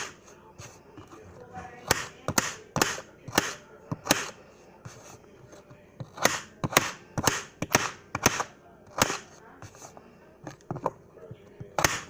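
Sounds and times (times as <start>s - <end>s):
knife chopping potato: 0.0s - 5.0s, 6.0s - 9.8s, 11.6s - 12.0s.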